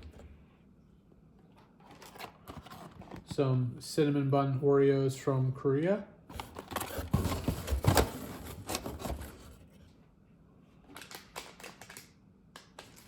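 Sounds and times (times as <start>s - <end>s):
snack packaging rustling: 1.6s - 3.4s, 6.3s - 9.5s, 10.9s - 13.0s
packs clicking and knocking: 6.3s - 9.5s.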